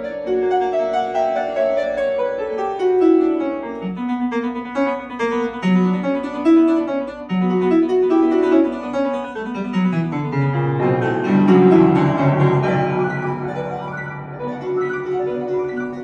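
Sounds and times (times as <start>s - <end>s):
ringing keyboard music: 11.3s - 16.0s.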